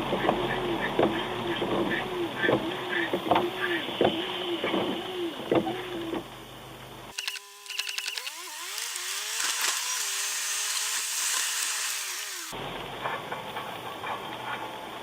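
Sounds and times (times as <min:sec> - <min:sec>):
scattered clicks: 0:07.1 - 0:09.9.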